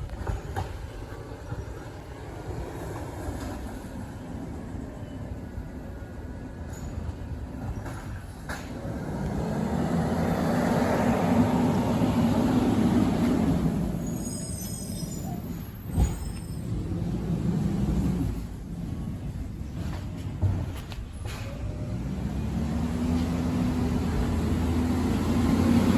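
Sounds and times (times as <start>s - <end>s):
truck diesel engine revving: 8.9s - 14.0s, 21.6s - 25.9s
high squeal: 13.8s - 16.9s.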